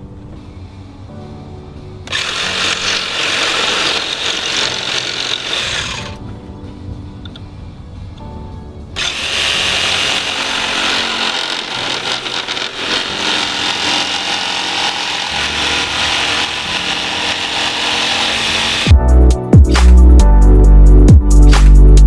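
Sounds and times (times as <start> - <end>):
background music: 0.0 - 22.0
power tool working on wood: 2.1 - 6.3, 9.0 - 19.0.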